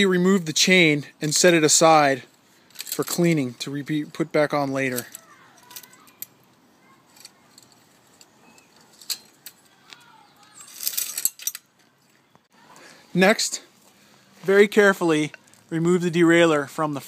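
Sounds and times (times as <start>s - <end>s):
bicycle chain rattling: 7.1s - 11.7s.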